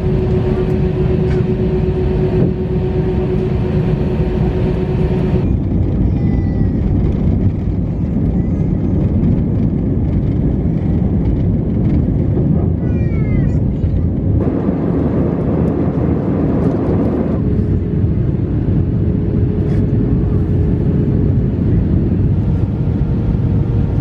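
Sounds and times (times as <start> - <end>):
steady hum: 0.0 - 6.0, 14.2 - 24.0
vehicle rumble from inside: 0.0 - 24.0.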